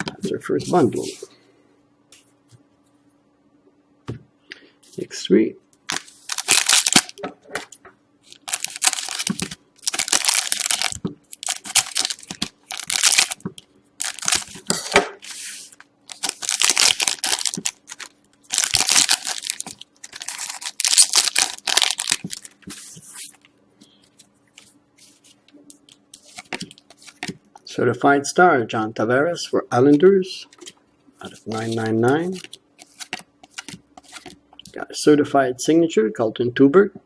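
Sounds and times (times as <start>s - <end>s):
card wrappers ripping and crinkling: 5.9s - 7.2s, 8.3s - 13.4s, 14.0s - 23.4s, 26.1s - 27.3s, 31.3s - 34.4s.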